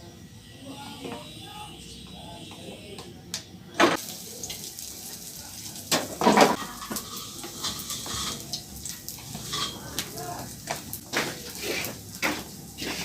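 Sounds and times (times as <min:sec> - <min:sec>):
food frying hiss: 0:03.9 - 0:13.0
metal utensils clattering in a pan: 0:05.9 - 0:13.0.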